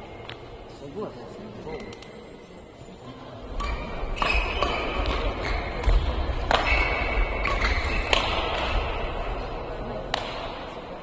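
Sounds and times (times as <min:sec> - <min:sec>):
shoes squeaking on floor: 0:03.6 - 0:05.9
racket hitting shuttlecock: 0:03.6 - 0:10.8.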